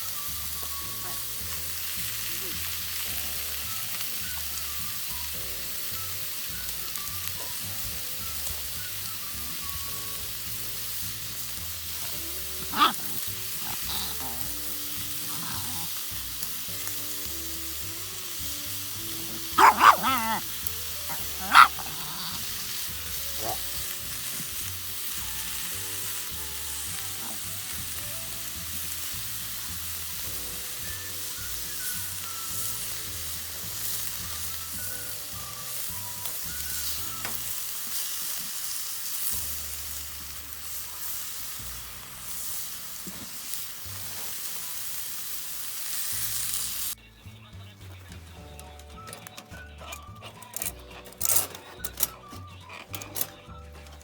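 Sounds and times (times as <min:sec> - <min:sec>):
faint background music: 0:00.0 - 0:54.0
fire pit sizzling: 0:00.0 - 0:54.0
dog barking: 0:12.6 - 0:14.5, 0:19.2 - 0:22.5, 0:23.3 - 0:23.8.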